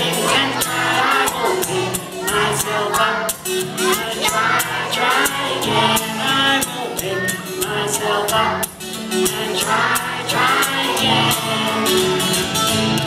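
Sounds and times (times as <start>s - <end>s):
children and adults singing: 0.0s - 12.6s
strummed acoustic guitar: 0.0s - 13.0s.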